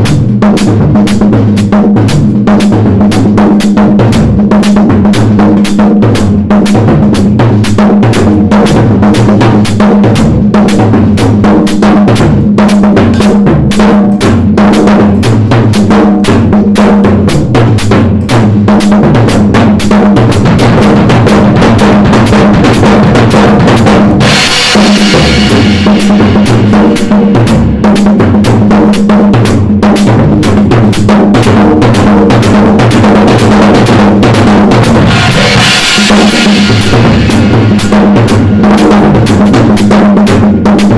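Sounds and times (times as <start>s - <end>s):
drum kit groove: 0.0s - 40.9s
cymbal crashes: 17.3s - 40.9s.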